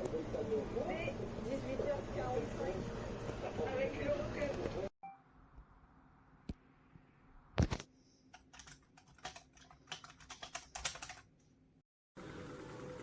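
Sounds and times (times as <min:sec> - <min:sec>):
keyboard typing: 0:08.3 - 0:11.3.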